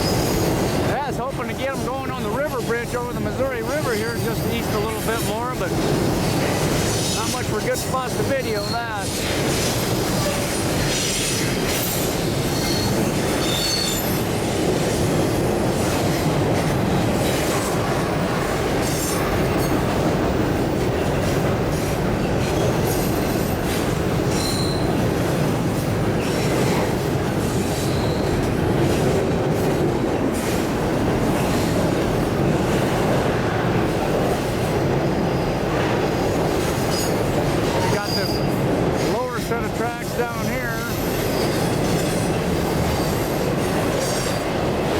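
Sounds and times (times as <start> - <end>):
train cars rumbling on rails: 0.0 - 44.9
high-pitched wheel squeals: 11.0 - 14.2, 24.3 - 25.0, 27.8 - 28.4, 37.8 - 38.6.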